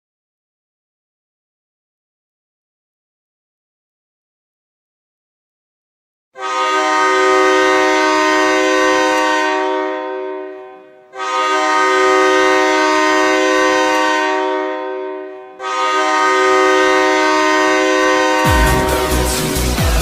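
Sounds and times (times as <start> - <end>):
hockey goal horn blasts: 6.4 - 19.6.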